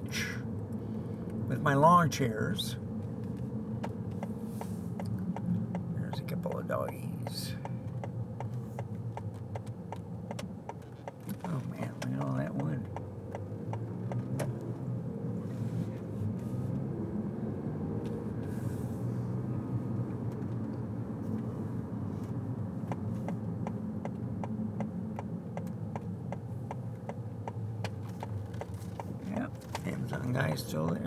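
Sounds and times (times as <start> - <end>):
car engine and road noise: 0.0 - 31.0
regular ticking: 3.8 - 14.5, 22.8 - 31.0.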